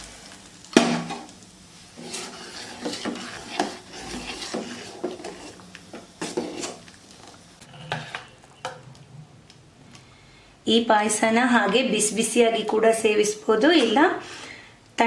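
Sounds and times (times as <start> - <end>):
spoon knocking and scraping pan: 2.0 - 7.0
spoon stirring in a pot: 2.0 - 9.0.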